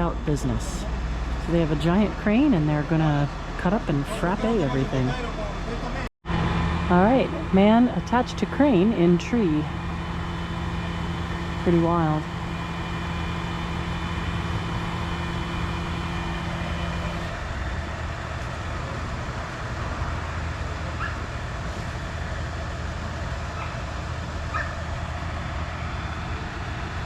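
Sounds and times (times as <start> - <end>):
steady whine: 0.0 - 27.0
truck engine running: 0.0 - 27.0.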